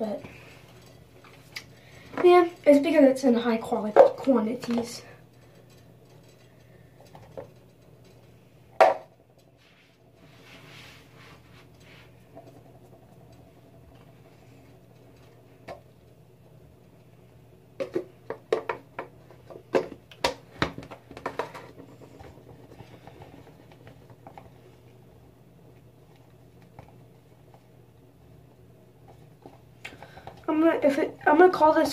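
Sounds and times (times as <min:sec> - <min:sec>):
soft rubbing sounds: 0:09.5 - 0:12.4.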